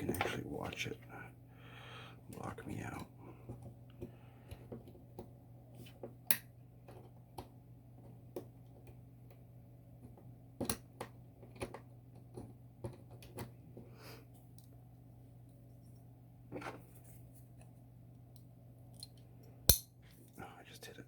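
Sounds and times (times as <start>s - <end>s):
steady low hum: 0.0s - 6.8s
lock pick metallic clicks: 19.0s - 19.9s.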